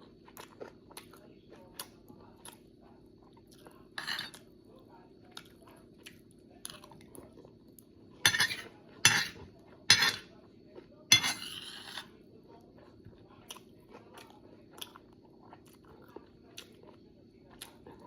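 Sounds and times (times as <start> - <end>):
steady low hum: 0.0 - 18.0
cutlery scraping on plate: 4.0 - 4.4, 8.3 - 10.3, 11.1 - 12.1.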